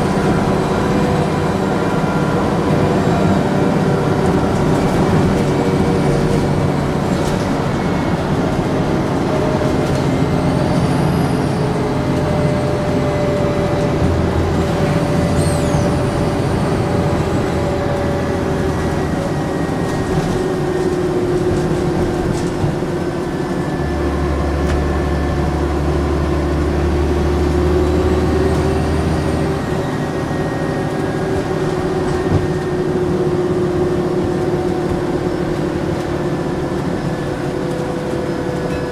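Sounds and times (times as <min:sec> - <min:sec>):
bus engine running: 0:00.0 - 0:38.9
turbocharger whistling: 0:10.2 - 0:20.0.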